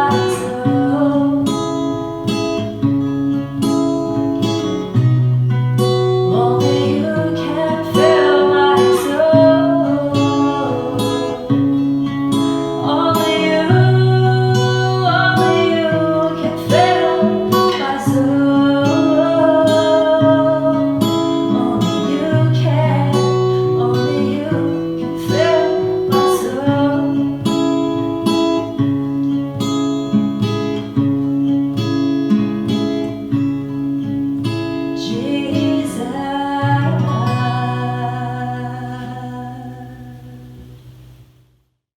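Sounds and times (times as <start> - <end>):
person singing worship song: 0.0 - 1.9, 6.3 - 27.7, 35.0 - 40.6
acoustic guitar strumming chords: 0.0 - 41.4.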